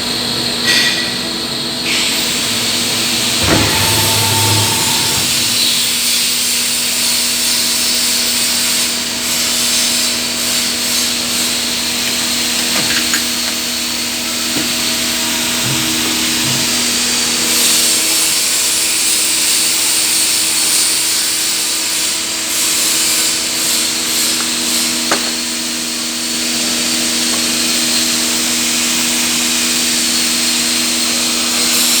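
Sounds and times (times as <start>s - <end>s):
lathe machine hum: 1.7s - 7.5s
high hiss of cutting: 1.9s - 8.1s.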